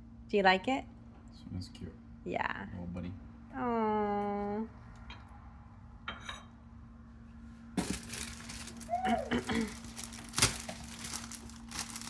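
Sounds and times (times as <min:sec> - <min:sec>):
packaging crinkling and rustling: 0:07.8 - 0:12.0
sharp crackle of packaging: 0:07.8 - 0:12.0.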